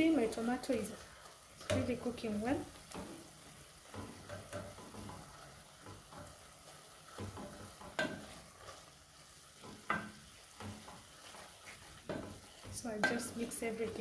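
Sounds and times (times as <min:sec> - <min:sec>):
stew sizzling in a pot: 0:00.0 - 0:14.0
spoon stirring and scraping pot: 0:00.1 - 0:14.0
spoon knocking against pot: 0:09.6 - 0:10.9.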